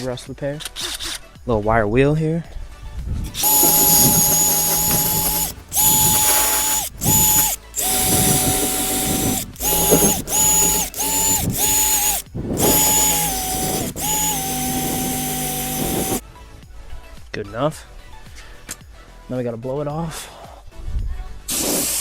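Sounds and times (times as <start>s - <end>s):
wire wheel drill whining: 3.4s - 16.2s.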